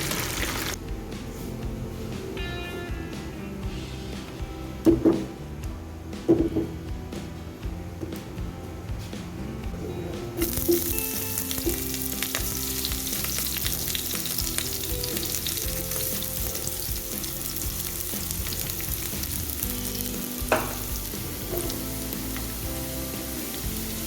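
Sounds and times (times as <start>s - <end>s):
hot oil sizzling and crackling: 0.0s - 0.8s, 10.4s - 24.0s.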